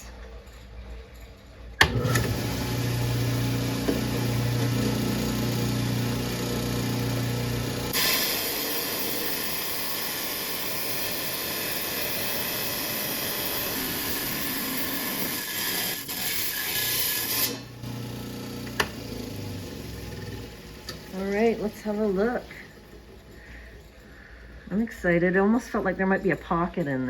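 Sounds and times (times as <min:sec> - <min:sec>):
motor hum: 0:00.0 - 0:25.6
saw blade hissing through stone: 0:07.9 - 0:17.7.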